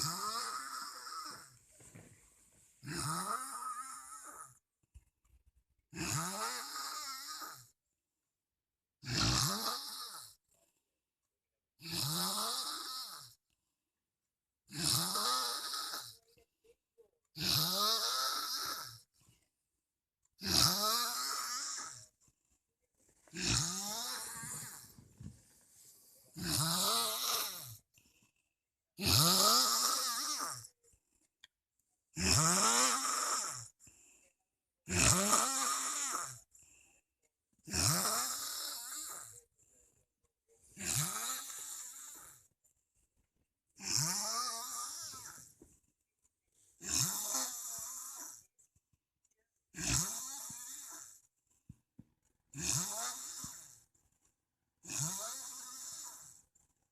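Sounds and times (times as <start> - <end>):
man snoring heavily: 0.0 - 1.5, 2.8 - 4.6, 5.9 - 7.8, 9.0 - 10.4, 11.8 - 13.4, 14.7 - 16.2, 17.4 - 19.1, 20.4 - 22.2, 23.3 - 27.9, 29.0 - 30.8, 32.1 - 33.8, 34.8 - 36.5, 37.6 - 39.4, 40.7 - 42.5, 43.8 - 45.6, 46.8 - 48.5, 49.7 - 51.2, 52.5 - 53.9, 54.8 - 56.5.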